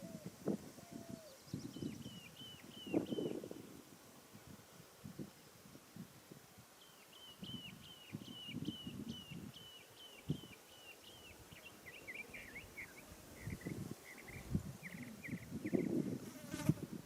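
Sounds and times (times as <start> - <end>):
songbird chirping: 0.0 - 3.7, 6.8 - 16.0.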